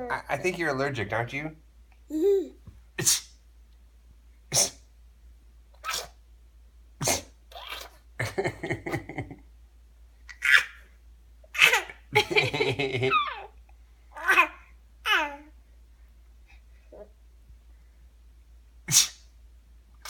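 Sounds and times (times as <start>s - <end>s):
short fake sneezes: 3.0s - 3.4s, 4.5s - 4.9s, 5.8s - 6.2s, 7.0s - 7.9s, 18.9s - 19.3s.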